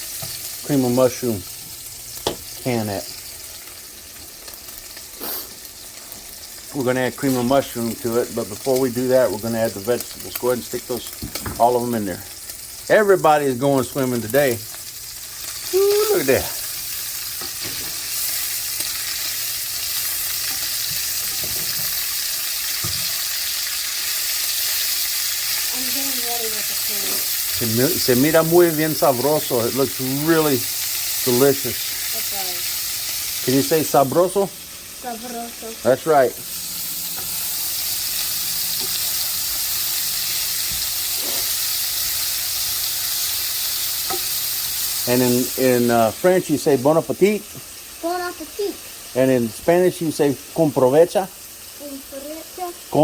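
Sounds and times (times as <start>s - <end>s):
food sizzling in a pan: 0.0s - 53.0s.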